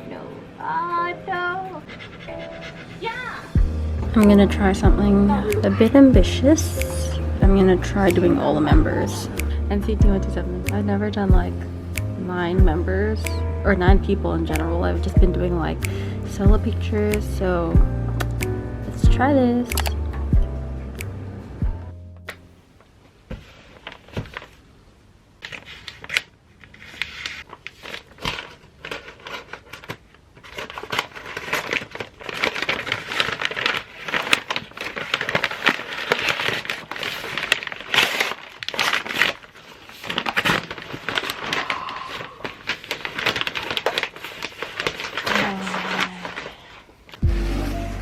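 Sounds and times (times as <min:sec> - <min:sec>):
crinkling and crackling handling: 0:22.7 - 0:24.7, 0:25.4 - 0:47.2.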